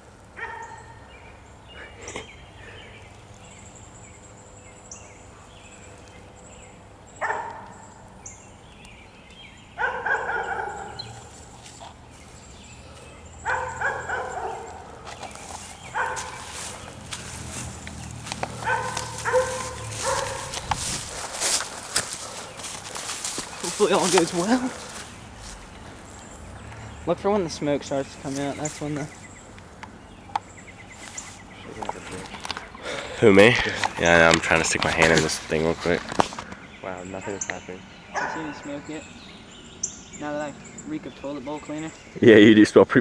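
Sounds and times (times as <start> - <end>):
dog barking: 0.4 - 1.2, 7.2 - 8.1, 9.8 - 12.1, 12.7 - 26.6, 37.1 - 38.9.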